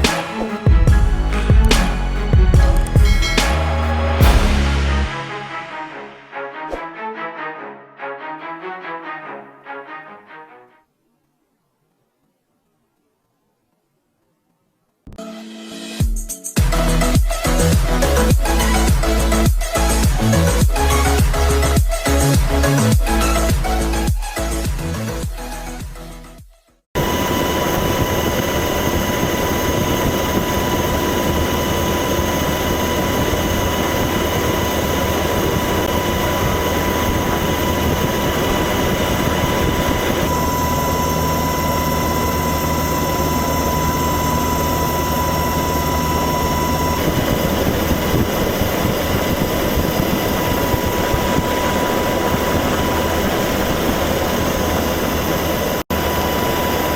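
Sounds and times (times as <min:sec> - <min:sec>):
loud engine noise: 0:00.0 - 0:05.8
high steady whine: 0:27.0 - 0:56.9.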